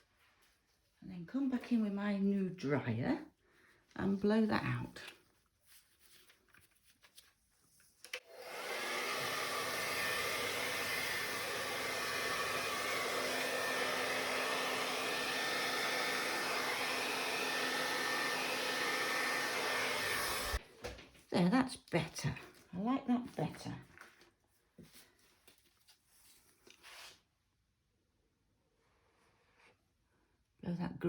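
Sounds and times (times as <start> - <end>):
hair dryer running: 8.1 - 20.6.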